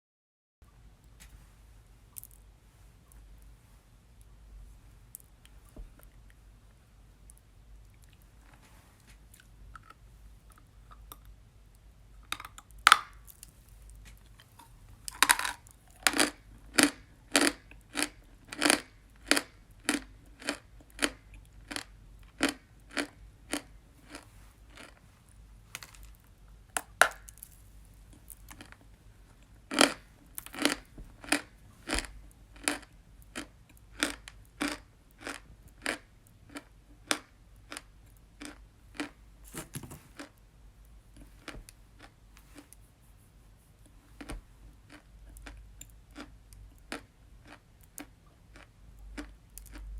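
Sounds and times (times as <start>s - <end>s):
person chewing chalk crunches: 43.8s - 49.9s.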